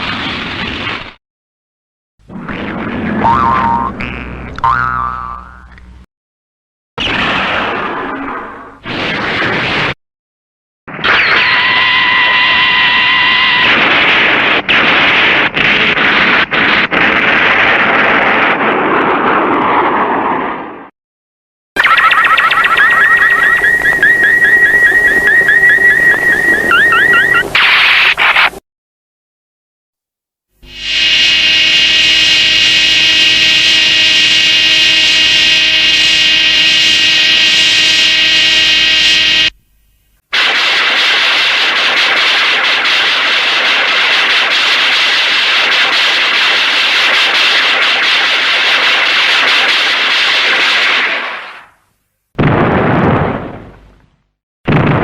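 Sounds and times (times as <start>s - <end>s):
rushing noise with high tones: 21.8s - 28.6s, 30.6s - 39.8s.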